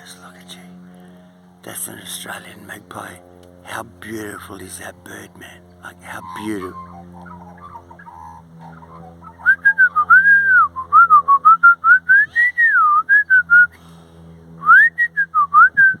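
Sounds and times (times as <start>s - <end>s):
person whistling tune: 9.6s - 13.7s, 14.6s - 16.0s.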